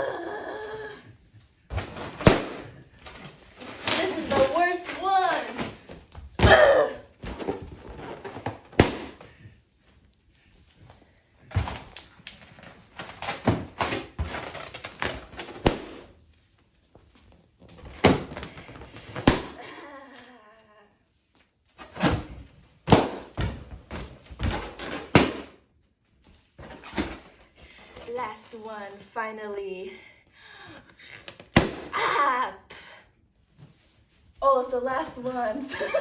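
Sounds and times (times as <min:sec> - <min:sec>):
balloons popping with bangs: 0:01.7 - 0:09.4, 0:11.5 - 0:16.2, 0:17.9 - 0:19.6, 0:21.8 - 0:25.7, 0:31.4 - 0:32.0.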